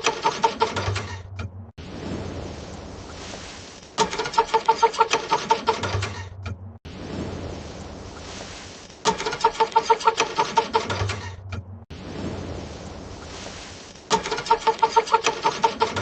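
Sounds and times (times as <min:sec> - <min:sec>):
car engine cranking: 0:00.0 - 0:01.7, 0:04.0 - 0:06.8, 0:09.0 - 0:11.8, 0:14.1 - 0:16.0.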